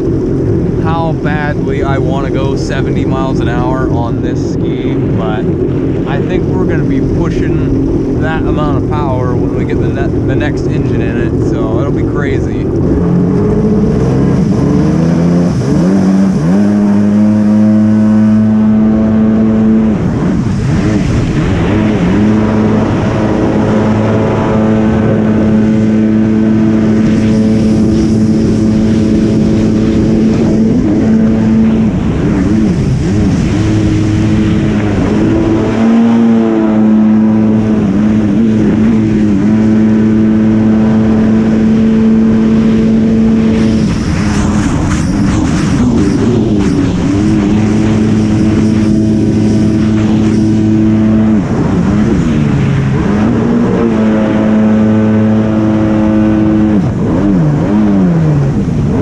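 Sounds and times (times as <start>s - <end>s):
jet ski engine revving: 0.0s - 59.0s
water rushing: 0.0s - 59.0s
wind: 0.0s - 59.0s.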